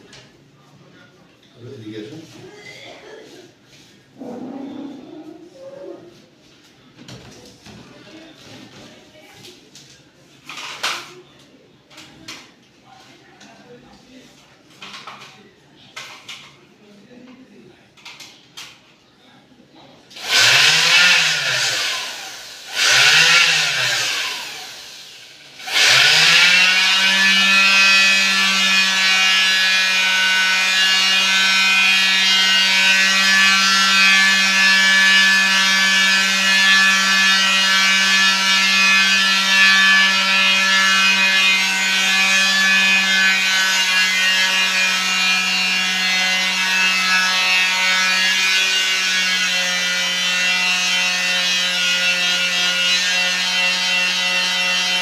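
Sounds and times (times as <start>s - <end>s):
small electric motor buzzing: 20.2s - 55.0s.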